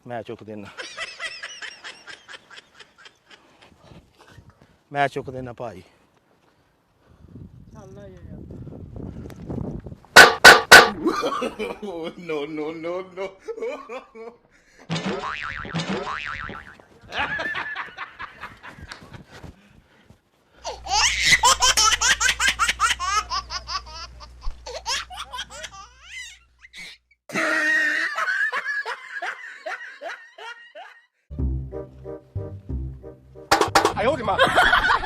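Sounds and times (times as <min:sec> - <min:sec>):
high-pitched laughter: 0:20.7 - 0:31.1.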